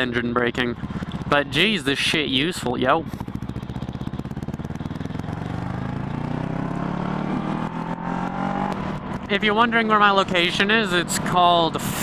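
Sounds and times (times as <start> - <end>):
motorcycle engine accelerating: 0.0 - 12.0.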